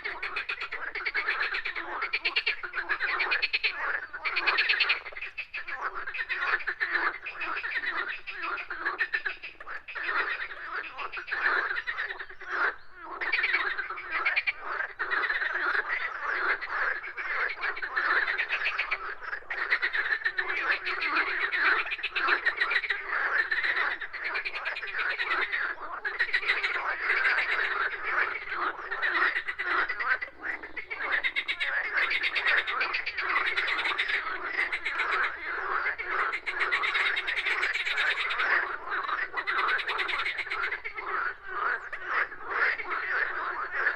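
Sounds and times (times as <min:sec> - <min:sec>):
chorus of frogs croaking: 0:00.0 - 0:43.9.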